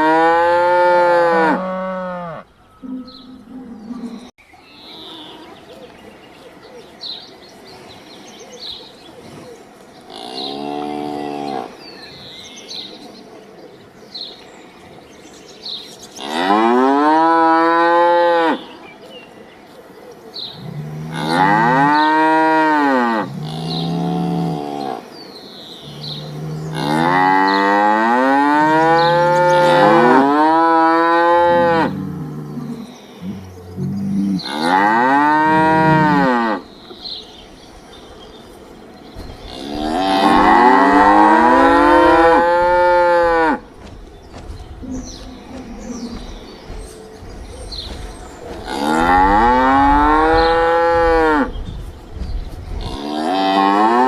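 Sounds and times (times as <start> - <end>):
cattle mooing: 0.0 - 4.3, 25.9 - 36.7, 39.5 - 43.6, 47.9 - 51.5.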